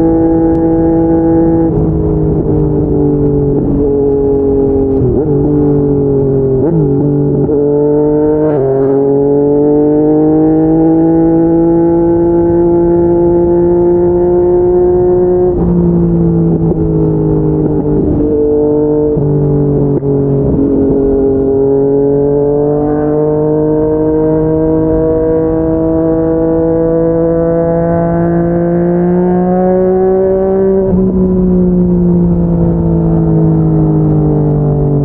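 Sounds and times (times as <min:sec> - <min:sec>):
motorcycle engine accelerating: 0:00.0 - 0:35.0.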